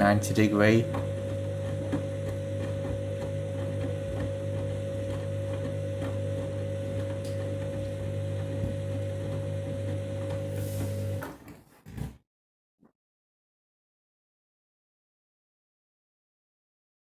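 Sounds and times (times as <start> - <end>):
washing machine motor hum: 0.0 - 11.4.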